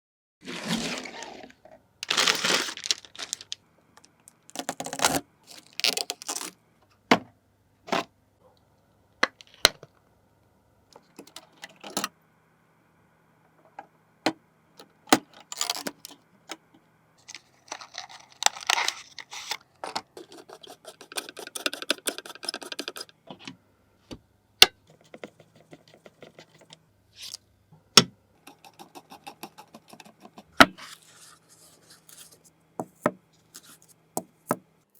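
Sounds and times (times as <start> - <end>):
scratching and rustling: 0.4 - 3.6, 28.9 - 34.0.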